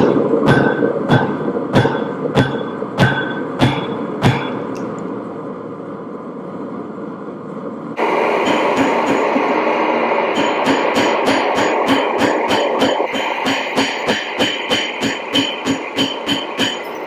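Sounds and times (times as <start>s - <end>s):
hammer striking steel on anvil: 0.0s - 4.7s, 10.3s - 17.0s
steady rushing noise: 0.0s - 17.0s.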